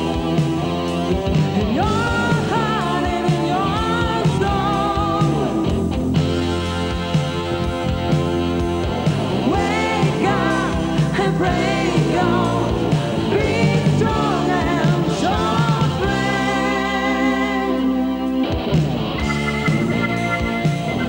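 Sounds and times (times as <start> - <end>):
steady drum beat: 0.0 - 16.8, 18.6 - 21.0
rock music: 0.0 - 21.0
person singing: 1.5 - 5.8, 9.4 - 18.2.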